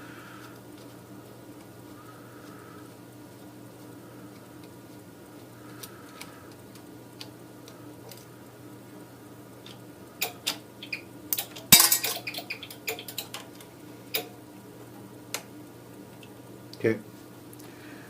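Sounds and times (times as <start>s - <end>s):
low steady hum: 0.0s - 18.0s
metal tools clinking: 11.7s - 12.4s.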